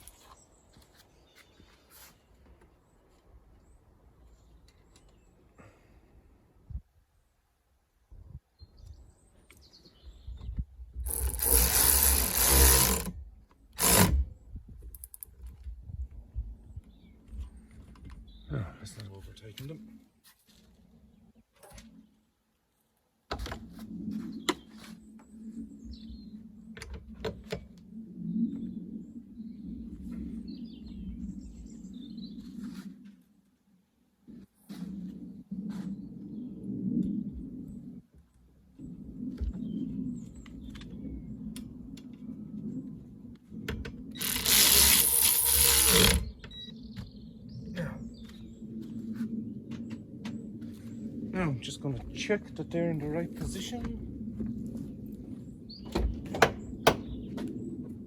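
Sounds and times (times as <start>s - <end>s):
birds chirping: 16.7s - 19.8s, 44.2s - 48.8s, 54.8s - 57.9s
ratchet wrench clicking: 44.2s - 46.2s.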